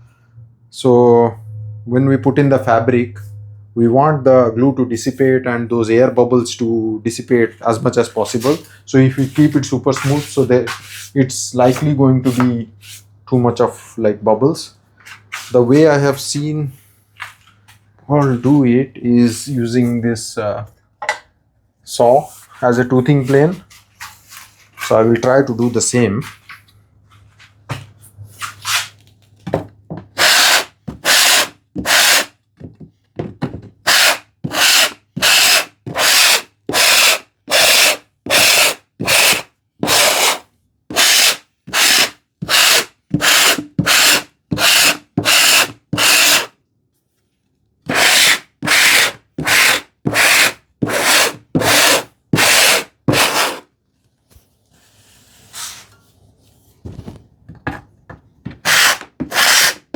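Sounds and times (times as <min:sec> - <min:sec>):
handsaw teeth rasping on wood: 0:30.2 - 0:32.4, 0:33.8 - 0:46.5, 0:47.9 - 0:53.6, 0:58.6 - 0:59.9.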